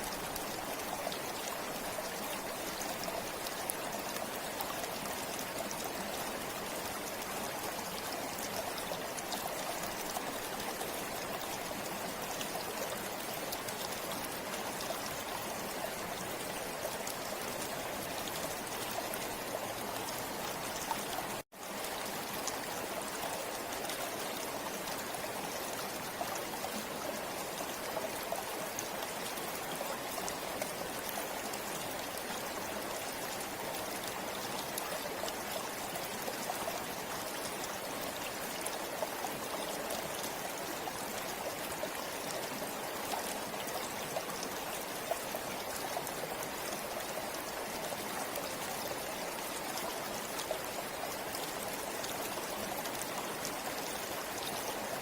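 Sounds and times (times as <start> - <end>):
river water flowing over stones: 0.0 - 55.0.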